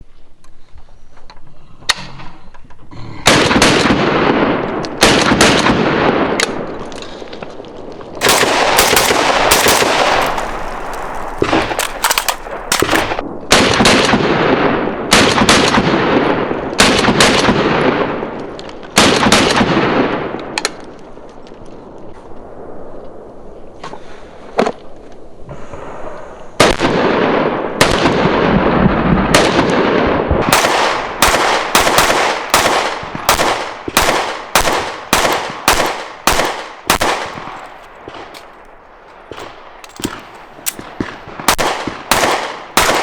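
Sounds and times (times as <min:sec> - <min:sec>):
gunshots with long echo: 0:03.3 - 0:07.6, 0:08.2 - 0:18.4, 0:26.6 - 0:43.0.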